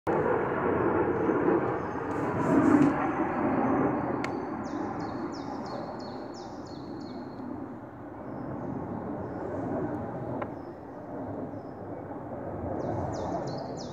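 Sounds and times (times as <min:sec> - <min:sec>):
airplane rumble: 0:00.1 - 0:13.9
bird chirping: 0:03.6 - 0:07.4, 0:12.8 - 0:13.9.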